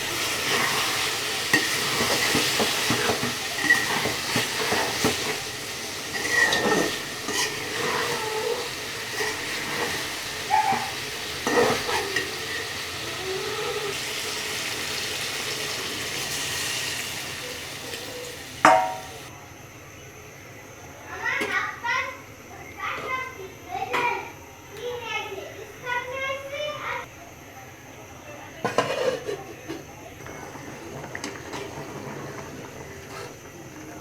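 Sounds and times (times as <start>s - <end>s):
food sizzling in a frying pan: 0.0s - 19.3s
spatula scraping a pan: 0.0s - 19.3s, 28.6s - 29.6s, 30.2s - 34.0s.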